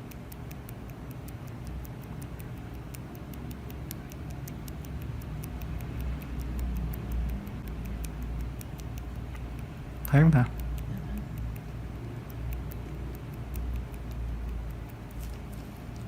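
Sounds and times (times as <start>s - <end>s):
needles tapping on skin: 6.9s - 16.0s.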